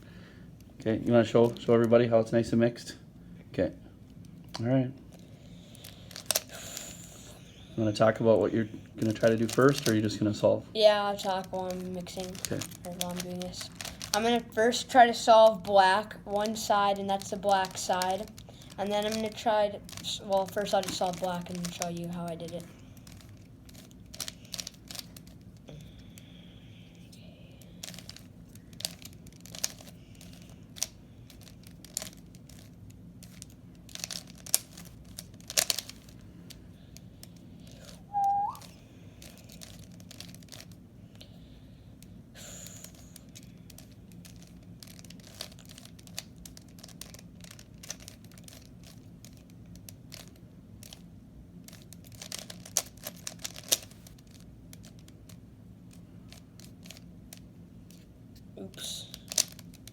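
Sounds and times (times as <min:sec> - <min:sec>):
puzzle cube clicking and rattling: 0:05.8 - 0:07.1, 0:09.0 - 0:10.1, 0:10.8 - 0:25.5, 0:27.6 - 0:36.2, 0:37.2 - 0:40.8, 0:42.7 - 0:55.4, 0:56.3 - 0:58.0, 0:59.0 - 0:59.9
rising whistle-like squeak: 0:38.1 - 0:38.7.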